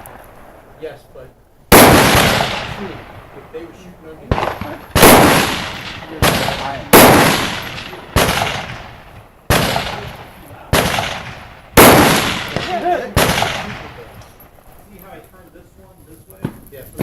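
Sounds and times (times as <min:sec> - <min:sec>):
rifle shots echoing: 0:01.7 - 0:15.2.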